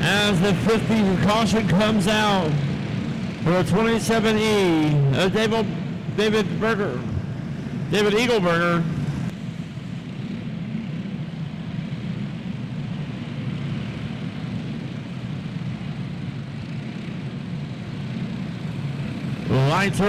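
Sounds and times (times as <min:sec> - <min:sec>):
racing karts engine drone: 0:00.0 - 0:20.0.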